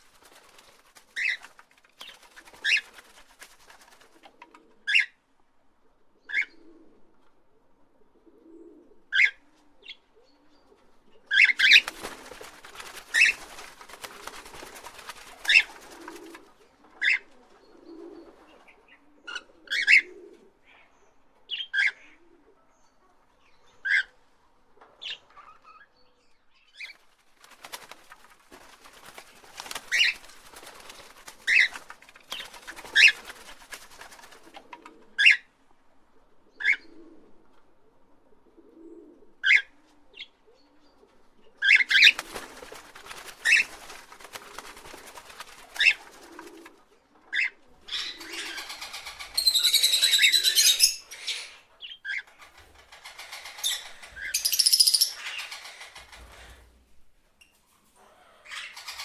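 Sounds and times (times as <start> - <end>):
parrots squawking: 47.8 - 56.5, 58.0 - 59.0
harsh parrot chatter: 47.8 - 56.7, 58.0 - 59.0.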